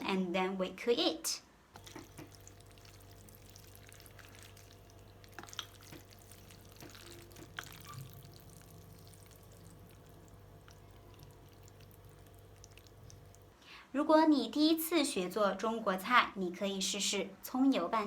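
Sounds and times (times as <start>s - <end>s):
low steady hum: 0.0s - 18.0s
wet mixing of noodles: 1.8s - 13.6s.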